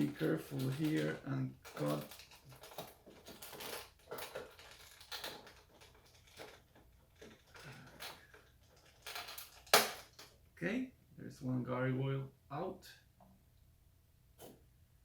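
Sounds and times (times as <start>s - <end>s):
plastic and cardboard crinkling: 0.0s - 10.2s.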